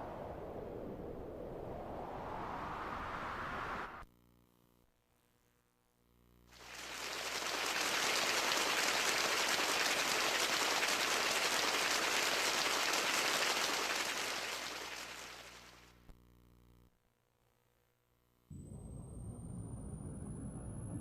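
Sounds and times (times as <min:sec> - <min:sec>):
crackling rush of noise: 0:00.0 - 0:04.0, 0:06.6 - 0:15.8.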